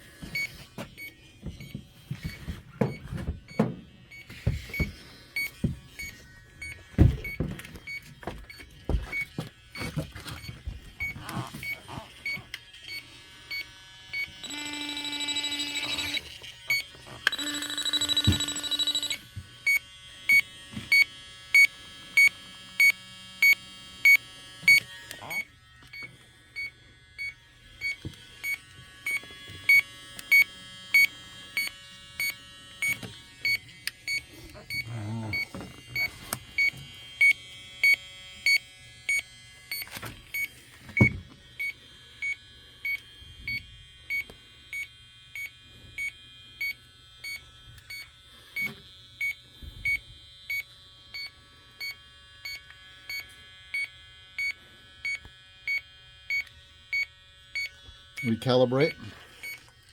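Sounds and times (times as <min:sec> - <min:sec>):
knocks and handling noises: 0:00.2 - 0:06.1
leak detector beeping: 0:00.2 - 0:59.7.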